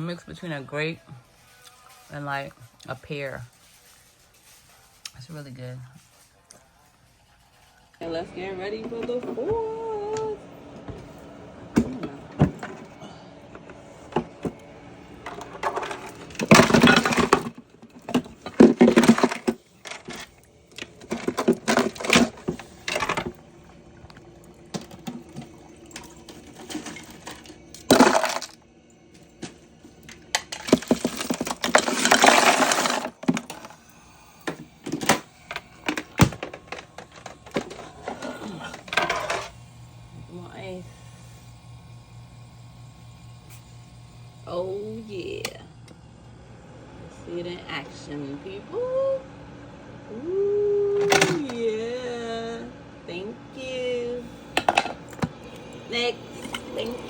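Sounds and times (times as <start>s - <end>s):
hard objects clinking and clattering: 15.2s - 23.4s, 24.5s - 28.6s, 29.4s - 39.6s, 54.6s - 55.7s.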